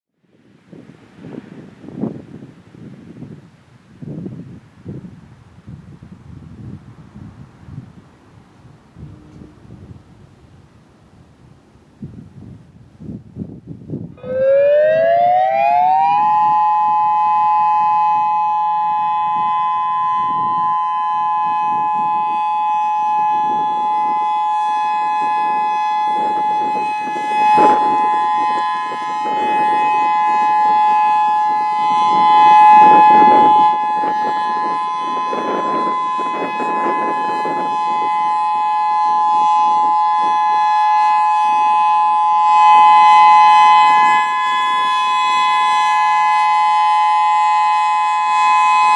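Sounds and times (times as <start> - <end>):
electronic tornado siren: 8.8 - 10.5, 14.1 - 48.9.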